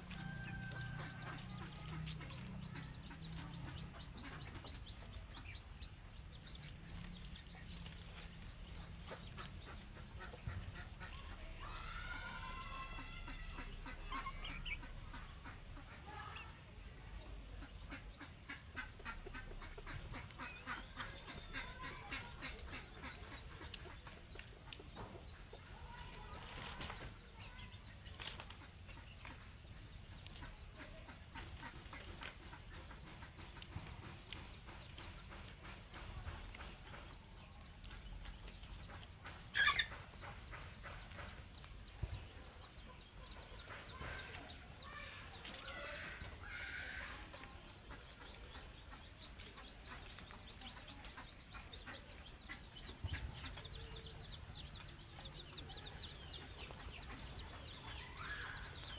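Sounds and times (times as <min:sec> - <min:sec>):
chickens clucking: 0:00.0 - 0:58.9
chicken squawk: 0:39.5 - 0:41.4.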